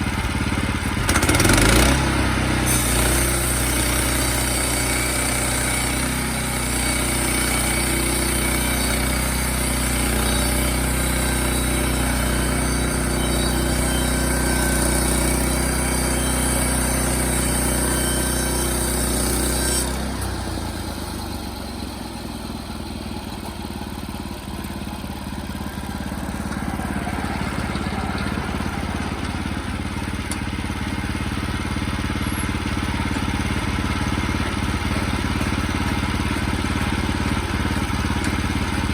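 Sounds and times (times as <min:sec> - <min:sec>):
sawmill engine running: 0:00.0 - 0:38.9
high whine: 0:25.5 - 0:33.5.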